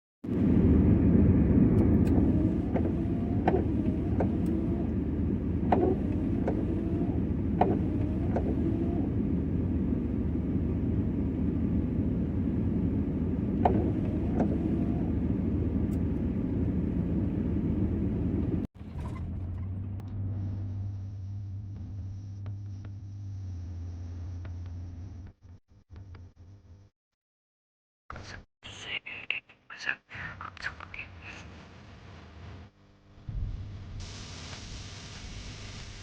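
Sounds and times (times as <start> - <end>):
vehicle rumbling: 0.2 - 23.4.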